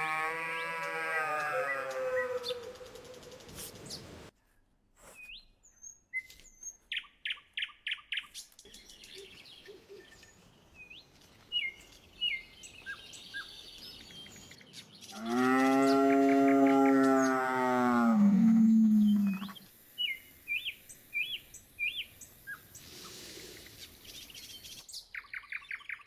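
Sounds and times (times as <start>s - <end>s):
cow mooing: 0.0s - 2.6s, 15.2s - 19.6s
small birds chirping: 0.6s - 4.4s, 5.0s - 26.0s.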